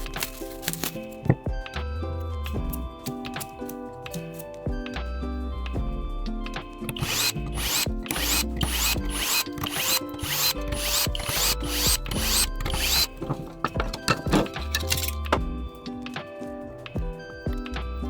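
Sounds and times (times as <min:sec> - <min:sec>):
background music: 0:00.0 - 0:18.0
ratchet rasping: 0:06.8 - 0:15.5.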